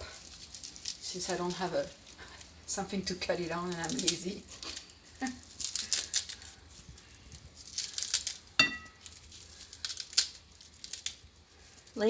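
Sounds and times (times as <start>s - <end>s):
parsley rustling: 0.0s - 12.0s
ringing clink: 8.6s - 9.0s.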